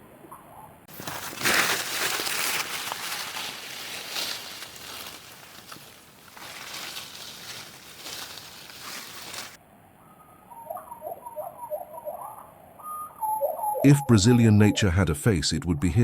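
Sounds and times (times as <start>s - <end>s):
rustling noise: 0.9s - 9.6s
bird chirping: 10.1s - 15.0s.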